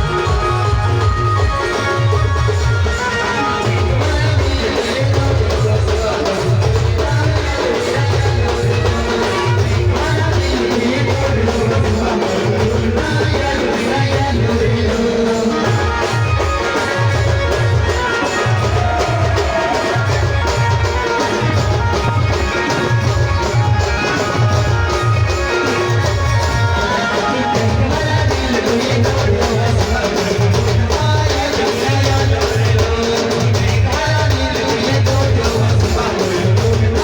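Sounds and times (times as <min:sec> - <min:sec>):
busy melody line: 0:00.0 - 0:06.4, 0:14.7 - 0:29.8
dance music played by band: 0:00.0 - 0:37.0.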